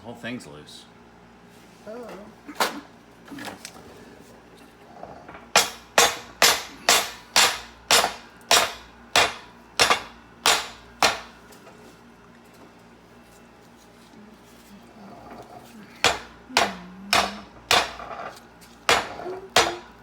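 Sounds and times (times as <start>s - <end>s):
hammer blows on metal: 16.0s - 18.0s.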